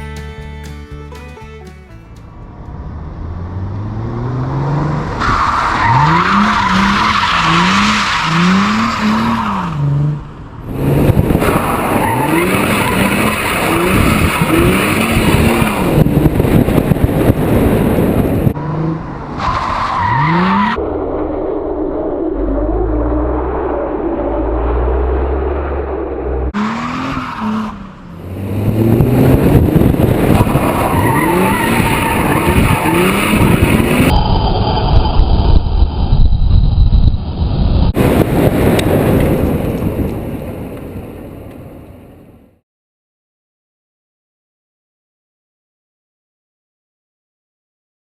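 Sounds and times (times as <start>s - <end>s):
car engine revving: 2.2s - 34.8s
tyres screeching: 26.6s - 28.4s, 30.3s - 34.1s.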